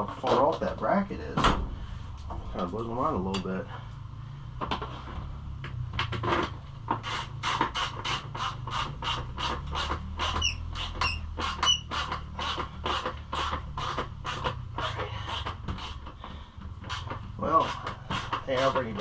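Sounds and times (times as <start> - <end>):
short squeaks: 10.2 - 12.1
hand tool scraping metal: 16.9 - 19.0.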